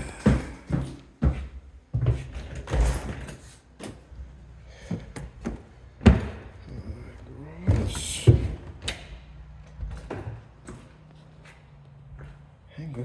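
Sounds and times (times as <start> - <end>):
heavy footsteps thudding: 0.0 - 2.4, 4.9 - 6.6, 7.6 - 8.8.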